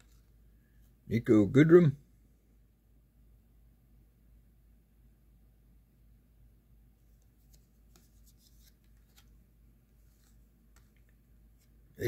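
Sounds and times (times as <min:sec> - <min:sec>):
cards sliding and flicking: 0:07.2 - 0:09.4, 0:10.0 - 0:11.8.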